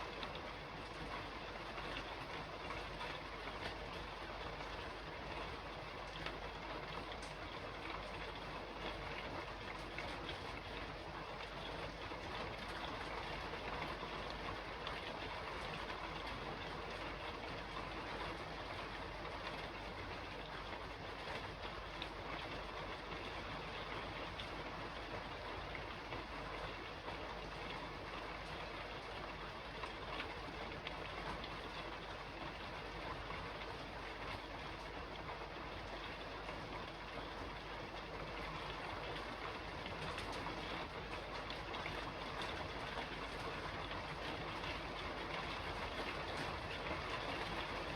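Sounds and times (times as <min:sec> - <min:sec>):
rain falling on a roof: 0:00.0 - 0:47.9
raindrop ticks: 0:06.0 - 0:10.7.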